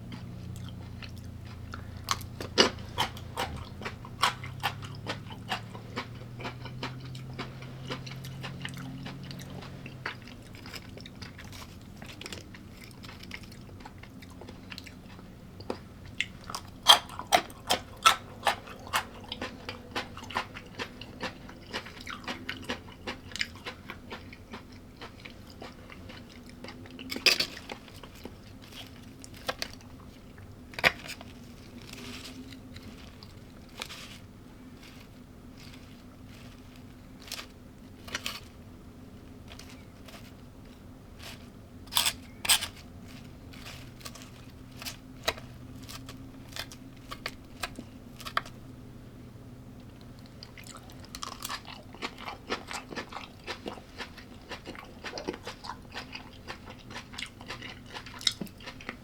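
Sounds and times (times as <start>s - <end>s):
person crunching food: 0.0s - 48.8s, 49.8s - 59.0s.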